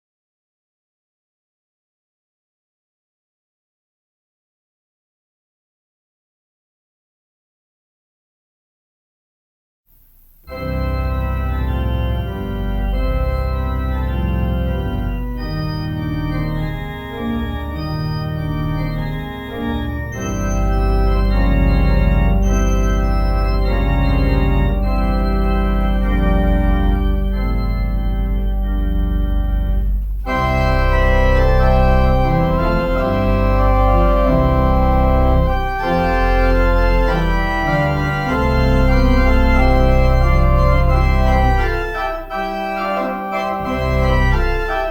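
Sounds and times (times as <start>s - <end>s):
organ playing chords: 10.2s - 44.9s.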